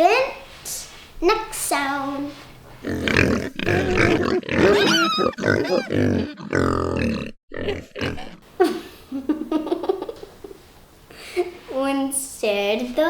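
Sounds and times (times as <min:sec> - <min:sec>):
pig grunting: 0:02.8 - 0:08.5
pig squealing: 0:02.9 - 0:08.4.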